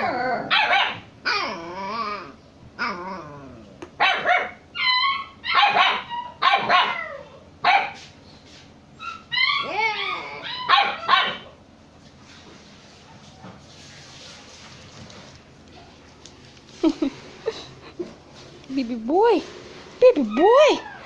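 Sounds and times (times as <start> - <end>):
dogs barking and yipping: 0.0 - 1.5, 4.0 - 8.0, 9.0 - 11.6, 20.2 - 21.0
dogs whining: 0.0 - 7.6, 8.9 - 11.6, 20.2 - 21.0.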